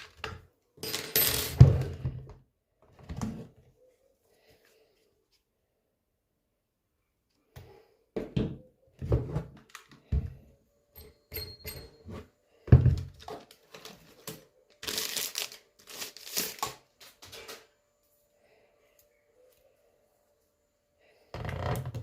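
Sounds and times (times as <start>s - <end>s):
plastic wrapping crinkling: 13.4s - 17.4s.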